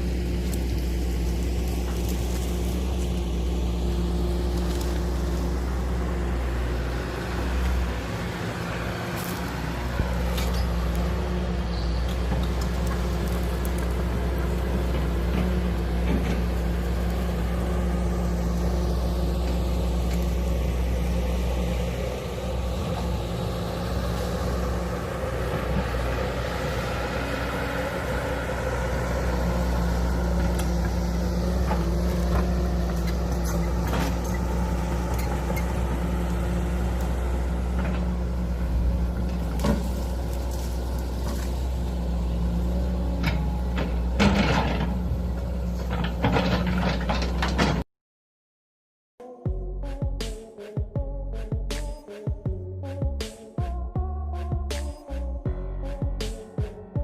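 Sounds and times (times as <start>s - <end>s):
excavator diesel engine running: 0.0s - 47.8s.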